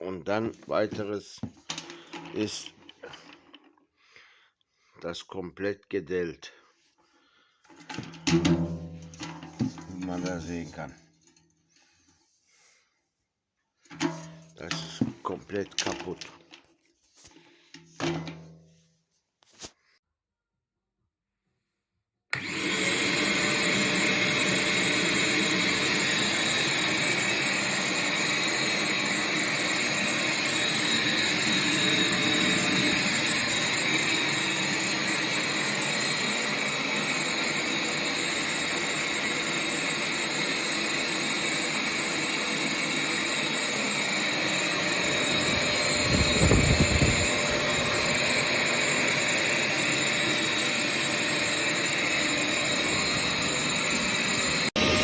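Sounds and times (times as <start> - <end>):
vacuum cleaner running: 22.3 - 55.0.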